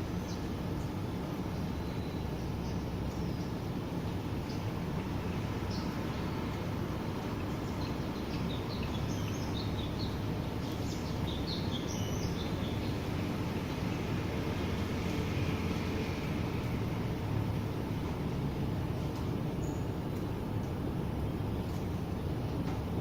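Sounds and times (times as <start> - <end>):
steady rain: 0.0 - 23.0
bird chirping: 7.6 - 13.0.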